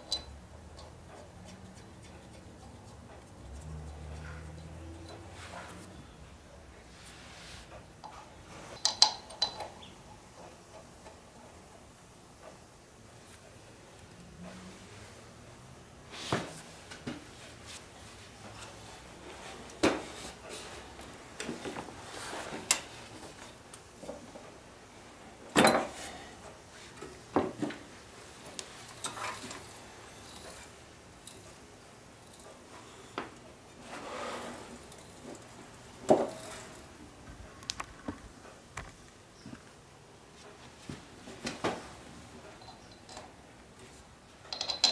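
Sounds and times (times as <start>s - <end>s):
knocks of tools being handled: 7.8s - 11.2s, 25.5s - 26.1s, 26.9s - 29.7s, 40.9s - 44.9s
metal parts clicking and knocking: 8.8s - 9.9s, 44.4s - 44.9s.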